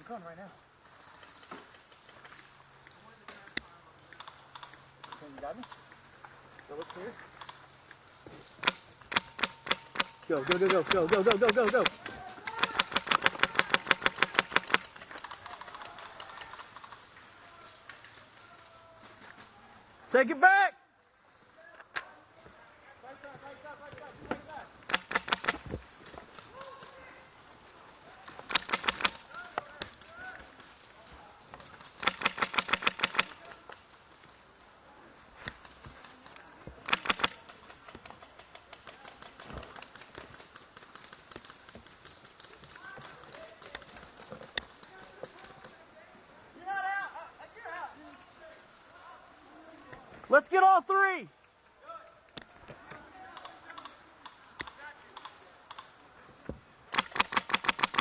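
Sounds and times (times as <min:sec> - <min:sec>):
sharp click: 0:08.6 - 0:14.8, 0:24.9 - 0:25.7, 0:28.5 - 0:29.2, 0:32.0 - 0:33.4, 0:36.8 - 0:37.4, 0:56.9 - 0:58.0
airsoft rifle rapid fire: 0:08.6 - 0:15.0, 0:24.9 - 0:25.7, 0:28.4 - 0:29.4, 0:32.0 - 0:33.5, 0:36.8 - 0:37.5, 0:56.9 - 0:58.0
faint rapid shots: 0:08.6 - 0:17.0, 0:24.9 - 0:25.7, 0:28.3 - 0:29.9, 0:31.8 - 0:33.6, 0:36.8 - 0:40.3, 0:56.9 - 0:58.0.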